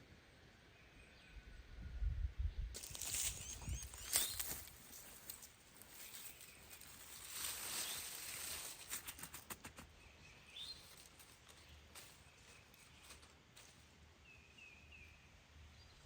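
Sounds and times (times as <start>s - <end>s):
rising bird chirp: 2.6s - 4.6s
soft rustling: 2.8s - 9.9s, 10.5s - 14.0s.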